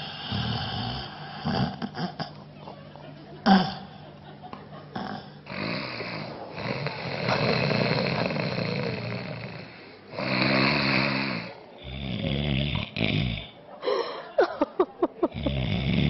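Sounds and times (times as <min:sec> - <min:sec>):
man snoring: 0:00.0 - 0:02.2, 0:05.0 - 0:13.6, 0:15.3 - 0:16.0.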